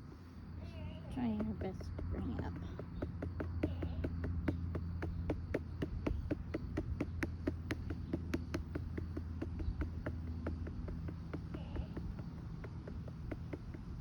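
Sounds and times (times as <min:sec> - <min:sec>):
steady low hum: 0:00.0 - 0:14.0
rapid patting on a doll: 0:00.6 - 0:14.0.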